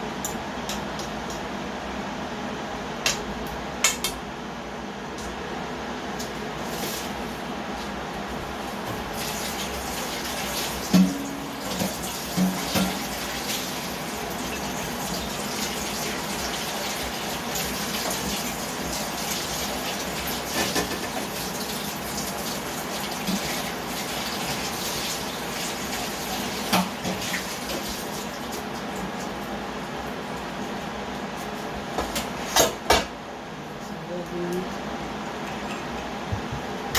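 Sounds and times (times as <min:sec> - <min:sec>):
tap running into sink: 0:10.7 - 0:13.2, 0:26.6 - 0:28.0.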